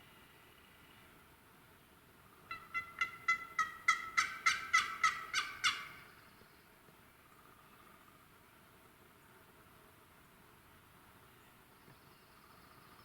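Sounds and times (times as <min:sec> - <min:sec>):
wild turkey yelping: 0:02.5 - 0:06.1.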